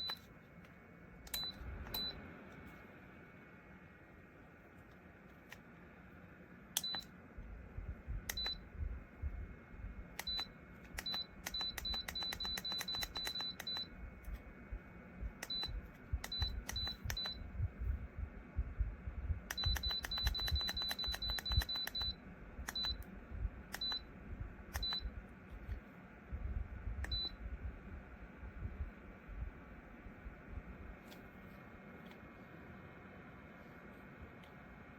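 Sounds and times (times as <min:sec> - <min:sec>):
low rumble: 0:07.4 - 0:10.1, 0:17.2 - 0:19.5, 0:22.4 - 0:31.0.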